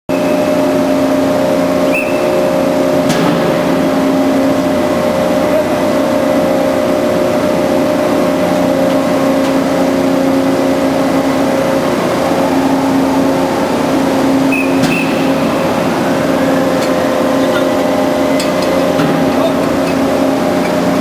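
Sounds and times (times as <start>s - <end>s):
band saw running: 0.1s - 21.0s.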